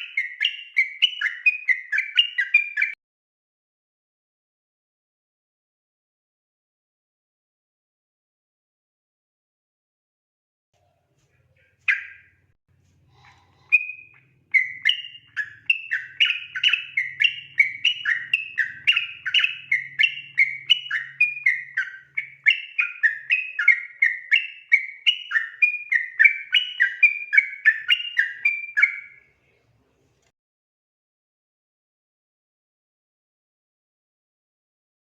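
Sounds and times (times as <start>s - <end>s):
bulbul singing: 0.0s - 3.0s, 11.2s - 12.4s, 13.1s - 29.3s.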